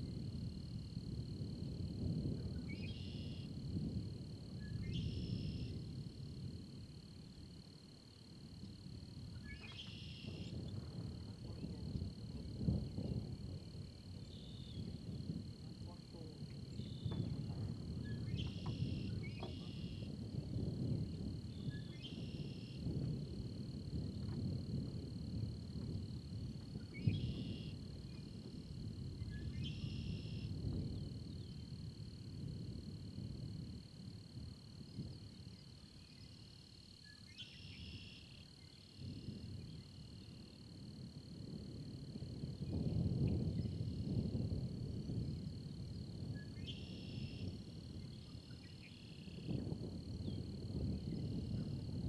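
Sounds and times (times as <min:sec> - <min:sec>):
low steady rumble: 0:00.0 - 0:36.4
raspy pulsing insect calls: 0:00.0 - 0:52.0
insect high trill: 0:02.6 - 0:03.6, 0:04.6 - 0:05.8, 0:06.6 - 0:10.6, 0:18.0 - 0:20.1, 0:26.8 - 0:27.9, 0:29.3 - 0:30.6, 0:35.5 - 0:39.0, 0:46.5 - 0:47.5, 0:48.2 - 0:49.6.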